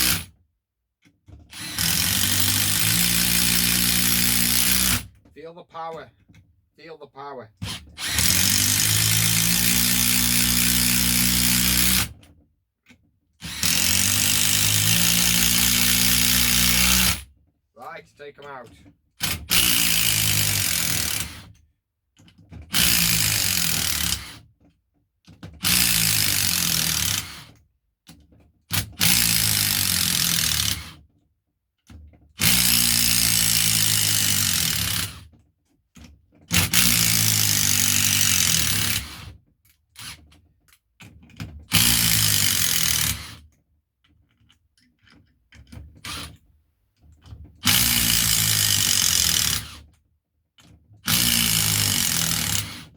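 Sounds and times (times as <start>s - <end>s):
impact driver hammering: 1.5s - 5.1s, 7.6s - 12.2s, 13.4s - 17.2s, 41.7s - 43.4s, 47.6s - 49.8s, 51.0s - 52.9s.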